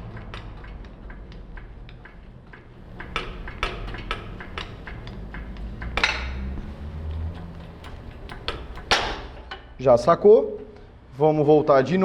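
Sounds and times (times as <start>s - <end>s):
press tool metal clicks and clinks: 0.0s - 9.8s
metallic knock: 2.8s - 9.8s.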